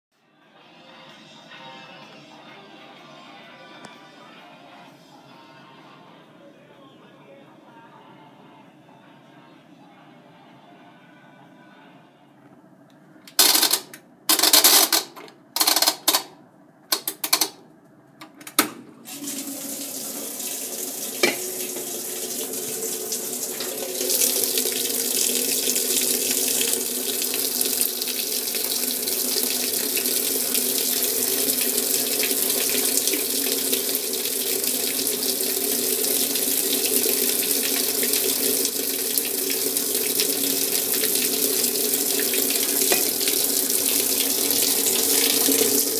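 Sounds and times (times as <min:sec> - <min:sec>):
washer filling with water: 0:18.9 - 0:45.9.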